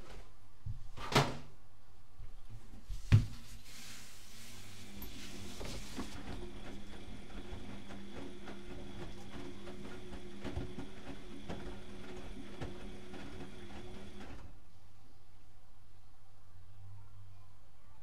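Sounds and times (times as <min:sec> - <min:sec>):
washing machine motor hum: 0:04.1 - 0:14.6.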